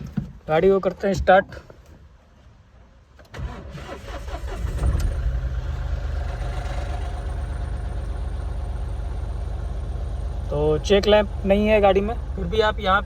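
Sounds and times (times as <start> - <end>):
diesel engine cranking and idling: 3.2 - 13.0.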